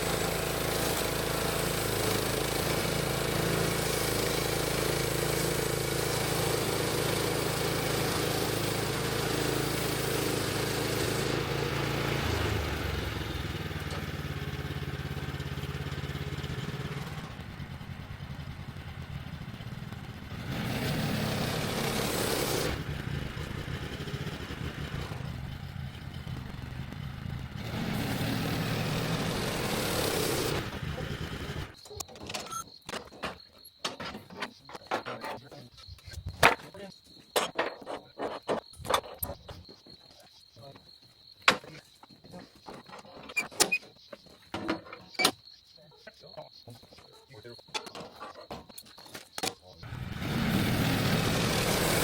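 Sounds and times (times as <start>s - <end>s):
gas engine running: 0.0s - 31.8s, 49.8s - 52.0s.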